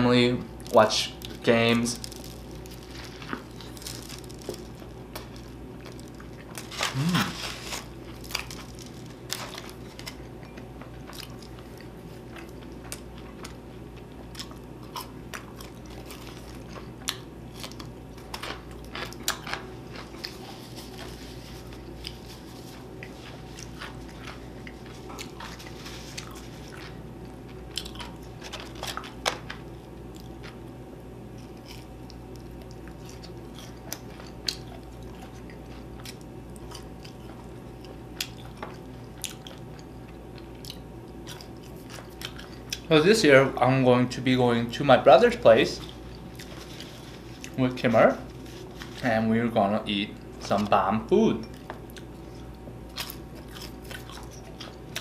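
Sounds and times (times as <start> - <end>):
steady low hum: 0.0 - 55.0
biting and chewing: 0.6 - 30.6, 31.3 - 42.9, 51.4 - 55.0.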